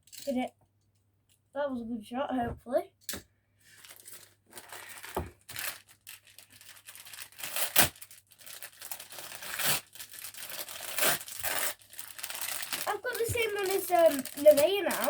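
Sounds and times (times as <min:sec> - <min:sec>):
packaging being torn and crinkled: 0:03.8 - 0:15.0.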